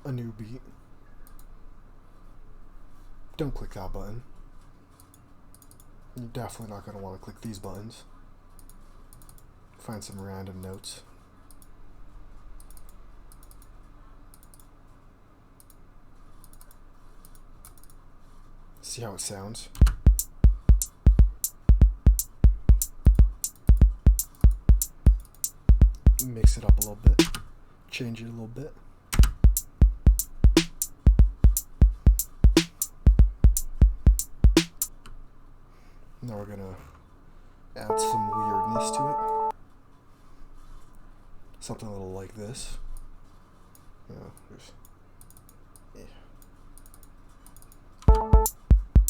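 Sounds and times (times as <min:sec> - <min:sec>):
computer mouse clicking: 0:08.6 - 0:09.5, 0:12.6 - 0:13.7, 0:14.3 - 0:14.7, 0:15.6 - 0:18.0, 0:45.2 - 0:45.9, 0:46.8 - 0:47.8
kick drum thumps: 0:19.8 - 0:27.3, 0:29.2 - 0:34.8, 0:48.1 - 0:49.0
high percussion ticks: 0:19.8 - 0:27.4, 0:29.2 - 0:34.9, 0:48.1 - 0:49.0.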